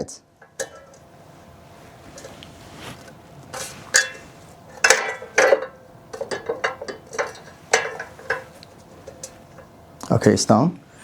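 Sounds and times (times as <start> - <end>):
metal clinks and knocks: 0.4 - 1.1, 3.5 - 9.7.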